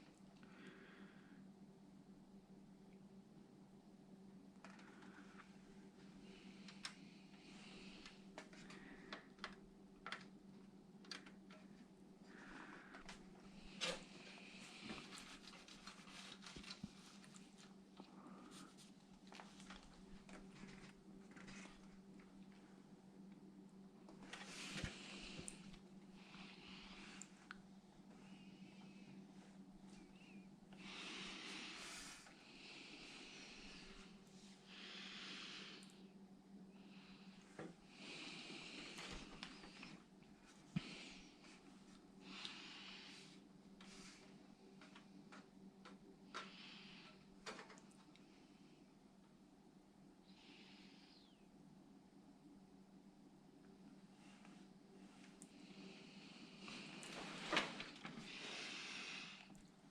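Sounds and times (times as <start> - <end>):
steady low hum: 0.0 - 59.9
person breathing slowly: 0.4 - 1.6, 4.6 - 10.3, 11.1 - 19.0, 24.3 - 45.1, 45.9 - 47.4, 50.2 - 51.5, 54.3 - 59.8.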